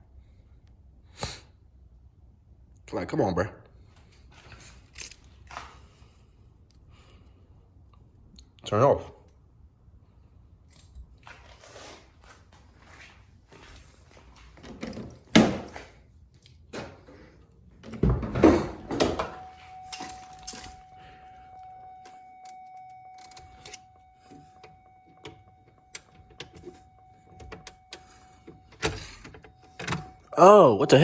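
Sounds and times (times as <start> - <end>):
keys jangling: 4.4 - 5.6, 14.6 - 16.6, 19.2 - 30.2.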